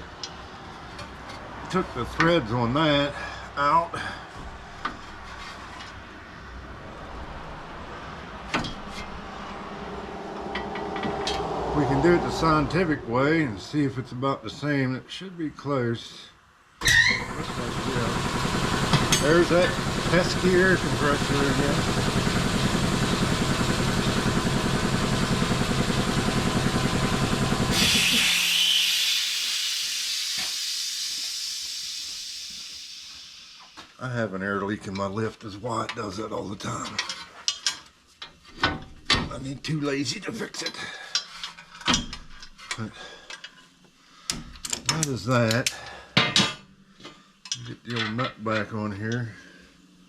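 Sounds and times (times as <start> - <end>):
highway traffic rumble: 0.0 - 15.1
air compressor chugging: 16.8 - 34.0.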